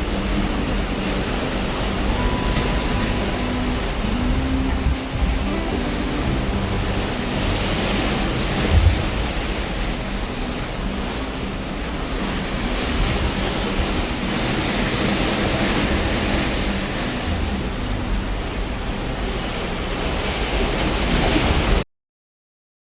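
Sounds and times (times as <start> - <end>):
ocean waves rushing: 0.0 - 21.8
wind: 0.0 - 21.8
wind buffets on microphone: 0.0 - 21.8.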